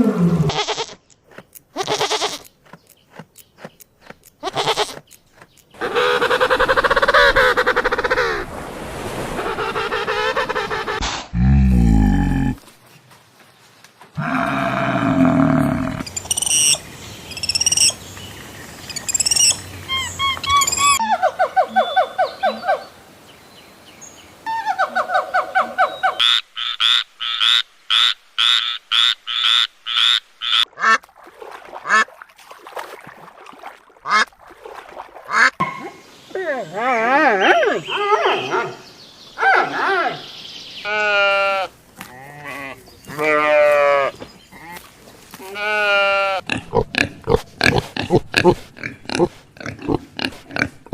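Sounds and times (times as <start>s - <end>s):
animal chirping calls: 18.9s - 22.9s.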